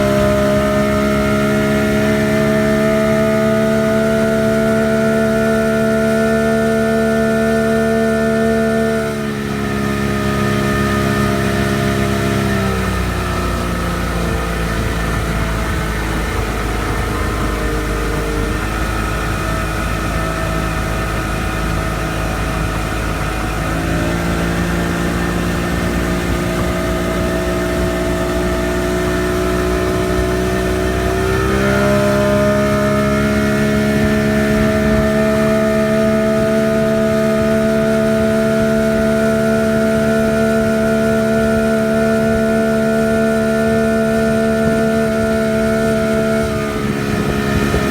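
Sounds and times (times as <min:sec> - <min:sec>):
boat engine running: 0:00.0 - 0:47.9.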